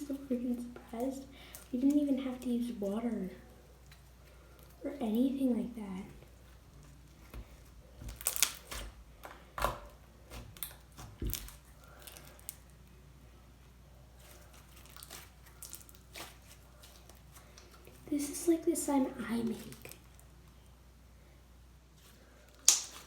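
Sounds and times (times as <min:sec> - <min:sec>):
slime squishing with clicks and pops: 0:09.6 - 0:12.6, 0:22.6 - 0:23.0.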